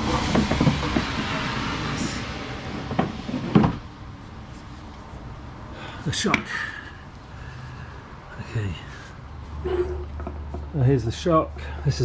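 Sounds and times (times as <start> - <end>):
metal knocks and clunks: 0.0 - 1.5, 2.7 - 3.9.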